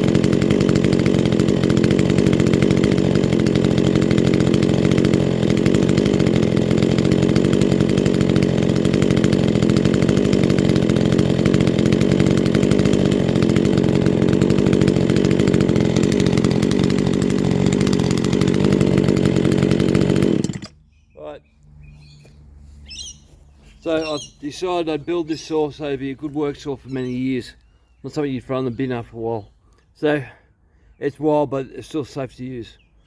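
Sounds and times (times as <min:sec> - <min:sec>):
two-stroke chainsaw running: 0:00.0 - 0:20.9, 0:23.8 - 0:27.1.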